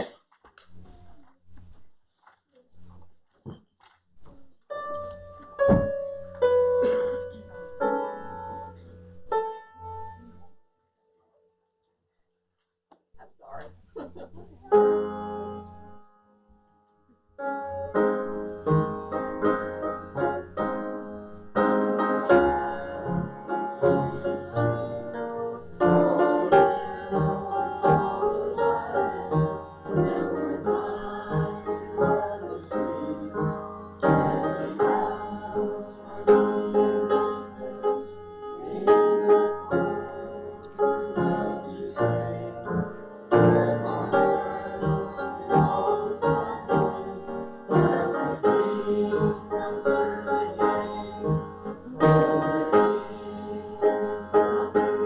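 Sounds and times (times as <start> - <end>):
piano playing a hymn tune: 4.7 - 10.4, 14.7 - 55.0.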